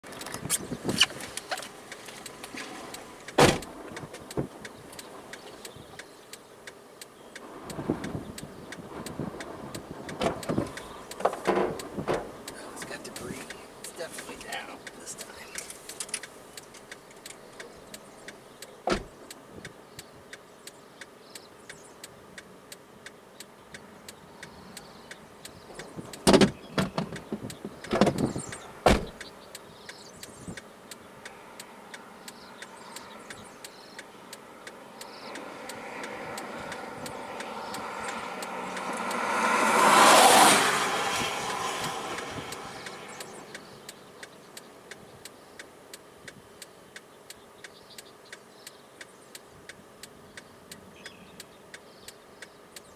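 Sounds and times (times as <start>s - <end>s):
loud knocks: 3.4s - 4.5s, 10.1s - 13.5s, 18.9s - 19.1s, 25.8s - 29.2s
vehicle passing by: 7.4s - 16.6s, 31.1s - 44.3s.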